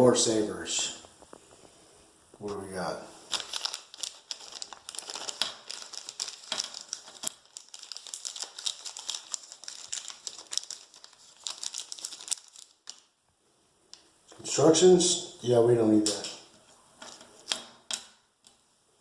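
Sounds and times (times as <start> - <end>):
packaging crinkling and crackling: 2.3 - 13.2, 16.1 - 18.2.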